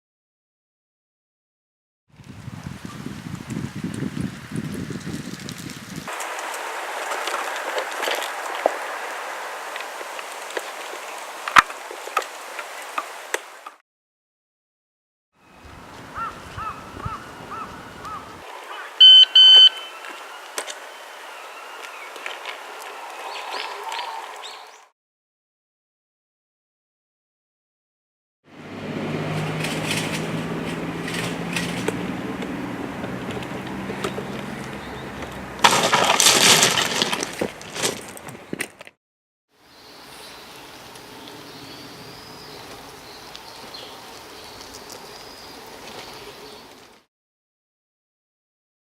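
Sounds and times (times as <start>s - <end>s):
outdoor ambience: 2.2s - 13.8s, 15.4s - 24.9s, 28.5s - 38.9s, 39.6s - 47.1s
loud electronic beeps: 19.0s - 20.0s
short chirps: 19.0s - 20.0s
crash with breaking and clattering: 35.6s - 38.1s.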